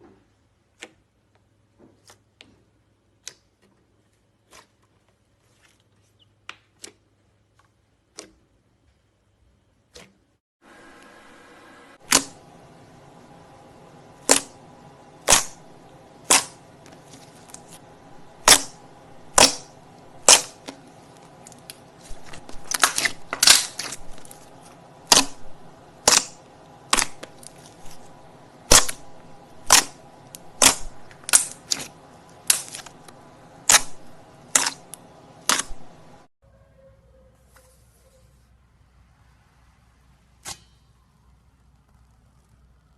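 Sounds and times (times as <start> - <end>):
faint steady hum: 10.6 - 42.9.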